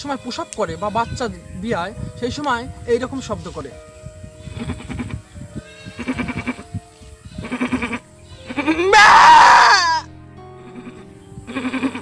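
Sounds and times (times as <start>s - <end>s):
background music: 0.0s - 12.0s
man imitating goat bleating: 7.4s - 10.1s.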